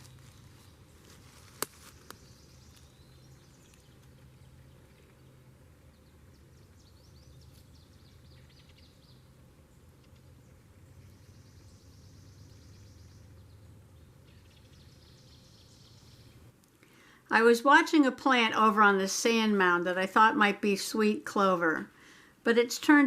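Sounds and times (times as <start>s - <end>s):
steady low hum: 0.0s - 17.5s.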